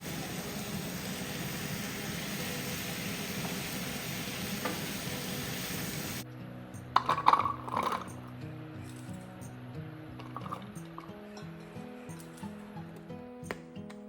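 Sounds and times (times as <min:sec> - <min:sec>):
chicken sizzling in hot oil: 0:00.0 - 0:06.2.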